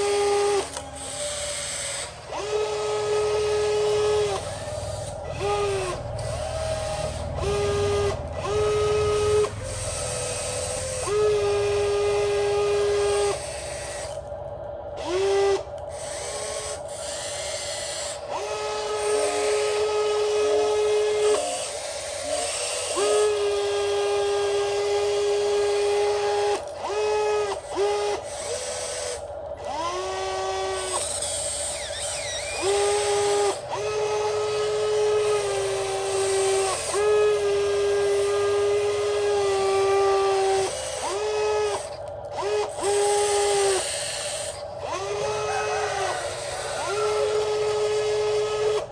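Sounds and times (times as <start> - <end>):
electric motors whining: 0.0 - 48.9
steady hum: 0.0 - 48.9.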